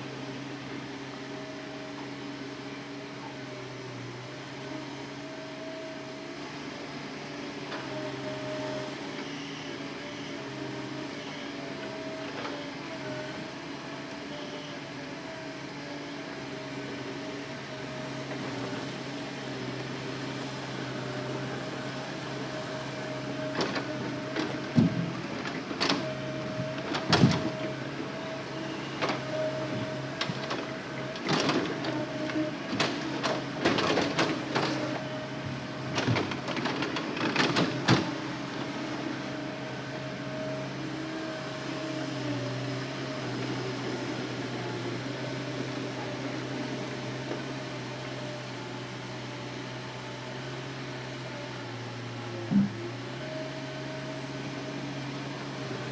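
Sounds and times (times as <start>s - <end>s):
excavator diesel engine running: 0.0s - 55.9s
logs knocking and clunking: 24.4s - 26.1s.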